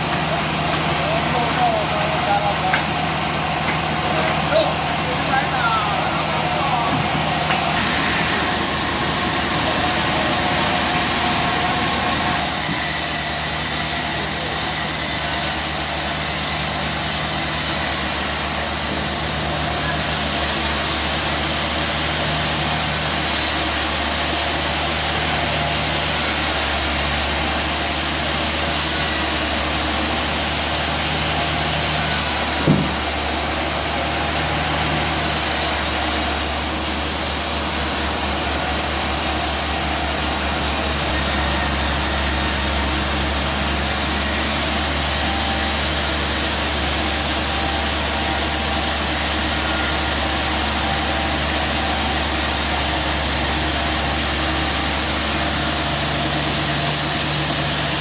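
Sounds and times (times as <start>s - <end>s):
sawmill engine running: 0.0s - 58.0s
sharp knock: 32.6s - 33.1s.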